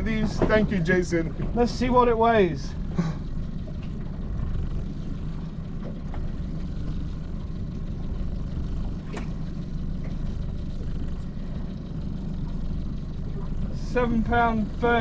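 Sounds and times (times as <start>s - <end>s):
boat engine low rumble: 0.0s - 15.0s.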